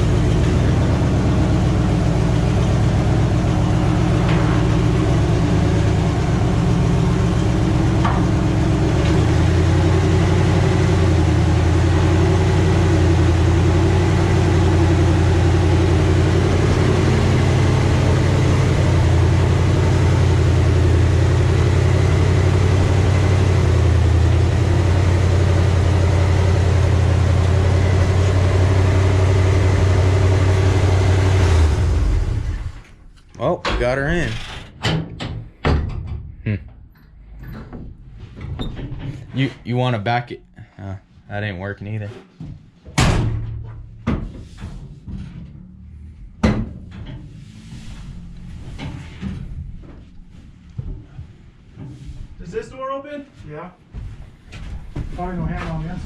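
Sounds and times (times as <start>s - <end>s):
truck engine running: 0.0s - 34.5s, 45.2s - 52.6s.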